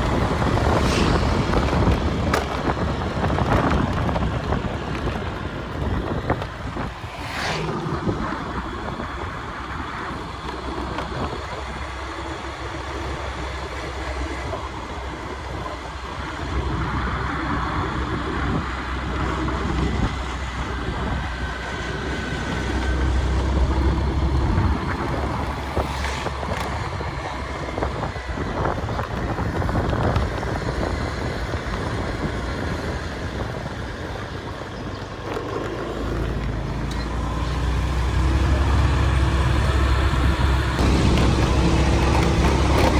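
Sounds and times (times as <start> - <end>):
low rumbling swells: 0.0 - 9.8, 38.5 - 42.9.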